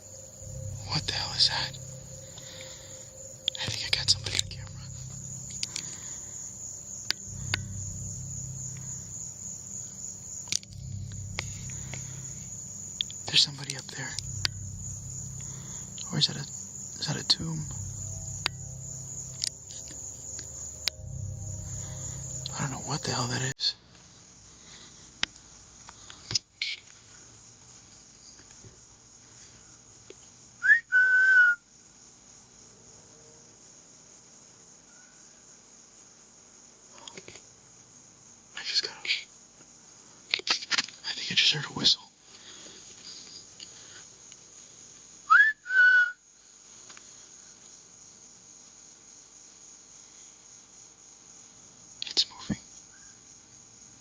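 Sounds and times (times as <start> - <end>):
crickets chirring: 0.0 - 32.7, 33.3 - 54.0
person whistling: 30.6 - 31.6, 45.3 - 46.2.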